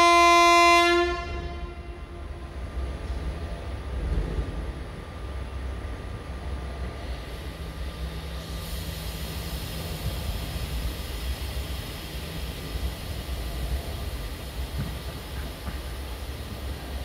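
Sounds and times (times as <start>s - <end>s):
train low rumble: 0.0s - 17.0s
train hiss: 2.3s - 17.0s.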